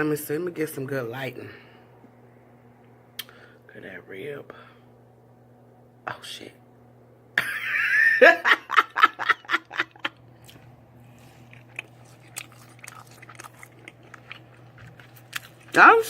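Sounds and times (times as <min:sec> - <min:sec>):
woman laughing: 0:07.4 - 0:10.2
chewing clicks: 0:10.4 - 0:15.8.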